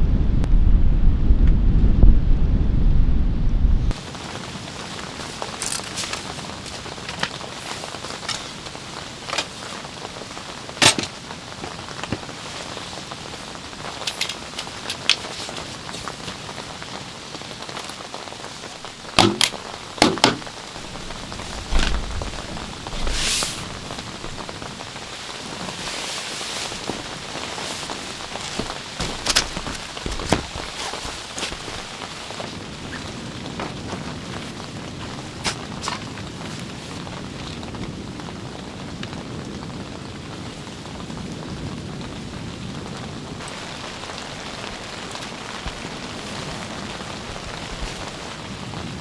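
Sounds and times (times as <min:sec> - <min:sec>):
rain pattering: 0:03.9 - 0:49.0
sharp taps and knocks: 0:19.2 - 0:23.1.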